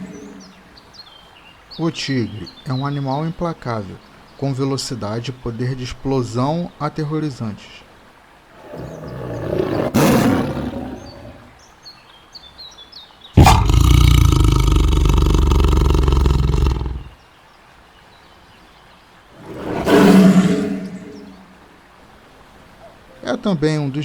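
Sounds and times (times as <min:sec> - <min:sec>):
tiger roaring: 0:00.0 - 0:00.6, 0:08.6 - 0:11.6, 0:13.4 - 0:17.2, 0:19.4 - 0:21.6
faint bird chirps: 0:00.0 - 0:05.4.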